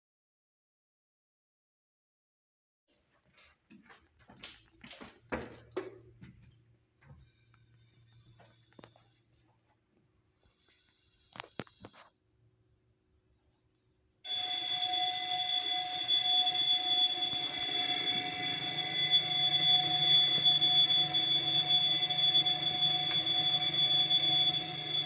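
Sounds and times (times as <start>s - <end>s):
fire alarm bell ringing: 14.2s - 25.0s.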